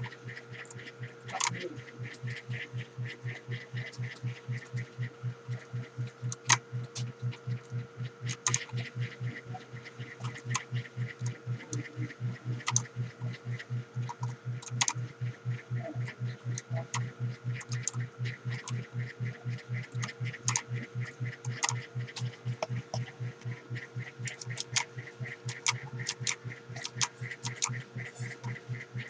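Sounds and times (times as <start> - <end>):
constant hum: 0.0 - 29.0
rhythmic low pulsing: 0.0 - 29.0
mechanical keyboard clicks: 8.3 - 8.8, 12.6 - 12.9, 14.0 - 15.0, 16.5 - 18.8, 19.9 - 20.6, 21.5 - 23.1, 24.2 - 28.6.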